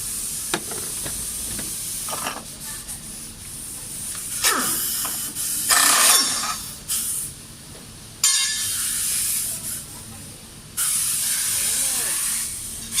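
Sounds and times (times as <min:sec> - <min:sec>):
hissing bursts: 0:10.8 - 0:12.9.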